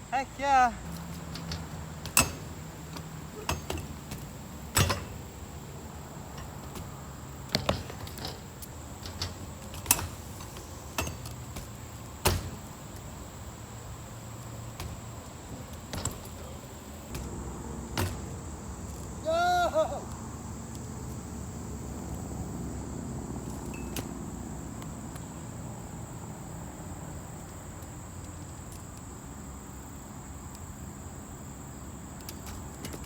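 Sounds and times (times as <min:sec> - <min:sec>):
bike tyres knocking on ramp: 0:00.9 - 0:20.0.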